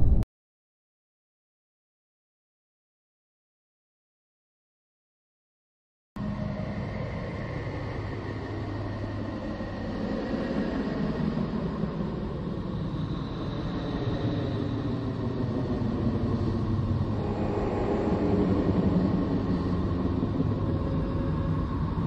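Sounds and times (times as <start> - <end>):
low rumbling drone: 0.0 - 0.2, 6.2 - 22.0.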